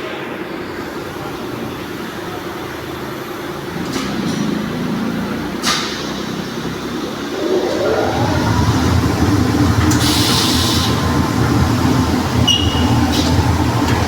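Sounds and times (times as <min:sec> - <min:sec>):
machine humming: 0:07.0 - 0:14.0.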